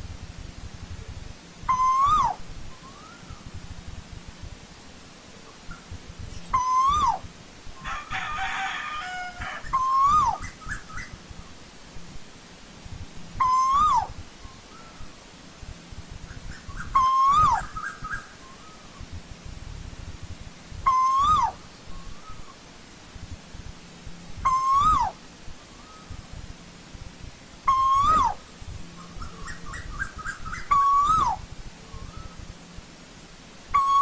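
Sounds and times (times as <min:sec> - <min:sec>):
bird whistled call: 0:01.7 - 0:03.5, 0:06.4 - 0:07.3, 0:09.7 - 0:11.1, 0:13.4 - 0:15.0, 0:16.5 - 0:19.0, 0:20.9 - 0:22.6, 0:24.4 - 0:26.2, 0:27.7 - 0:28.4, 0:29.0 - 0:32.4, 0:33.8 - 0:34.0.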